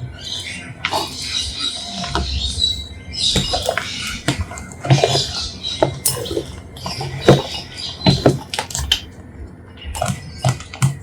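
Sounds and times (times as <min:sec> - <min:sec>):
utensils and dishes clinking: 0:00.8 - 0:09.1.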